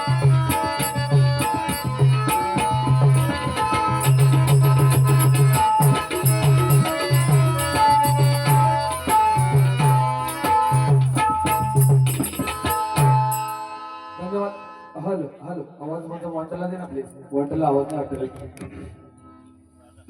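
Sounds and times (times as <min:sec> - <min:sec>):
tabla: 0:00.0 - 0:15.0, 0:15.8 - 0:19.7
held melody notes: 0:00.0 - 0:15.8.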